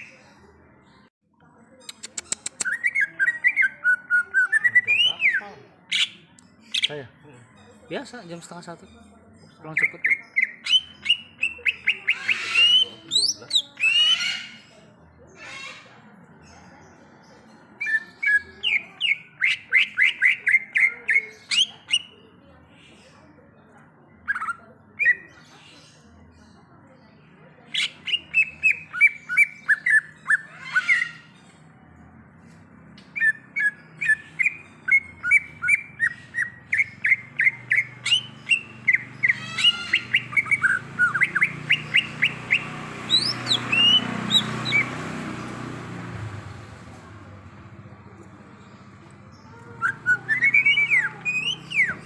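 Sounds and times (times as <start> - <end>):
bird whistled chirps: 49.8 - 52.0.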